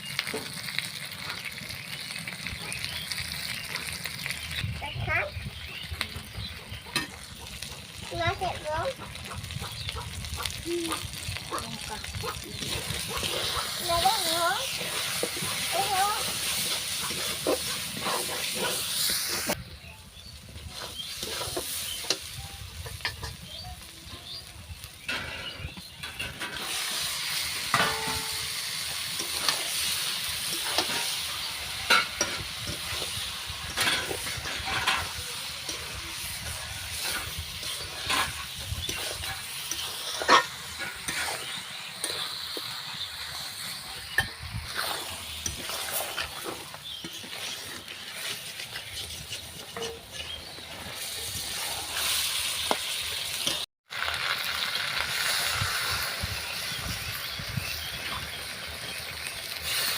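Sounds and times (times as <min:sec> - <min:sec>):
curry sizzling in pan: 0:00.0 - 0:59.9
metal utensil scraping pan: 0:06.7 - 0:19.6, 0:20.6 - 0:24.4, 0:25.0 - 0:53.7.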